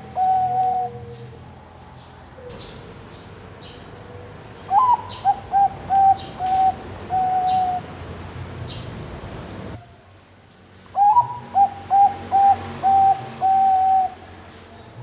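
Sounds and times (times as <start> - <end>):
dove cooing: 0.0 - 1.5, 4.0 - 8.0, 11.0 - 14.3.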